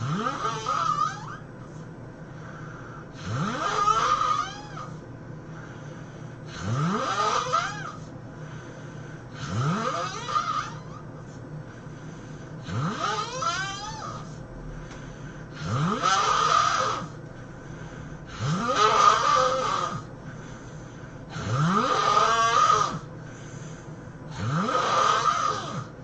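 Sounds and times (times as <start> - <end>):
person snoring: 0.0 - 1.4, 2.6 - 5.0, 6.5 - 8.0, 9.3 - 11.0, 12.6 - 14.4, 15.5 - 20.1, 21.3 - 23.1, 24.3 - 26.0.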